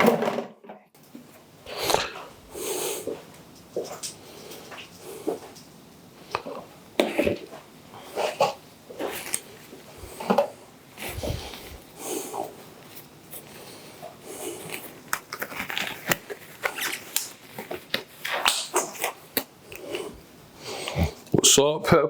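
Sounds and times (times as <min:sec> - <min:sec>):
packaging rustling: 0:11.0 - 0:20.1.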